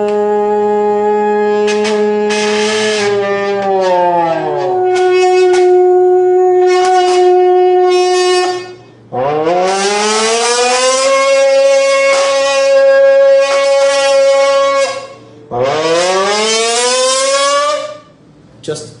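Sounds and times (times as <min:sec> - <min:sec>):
humming into a buzzing can: 0:00.0 - 0:18.2.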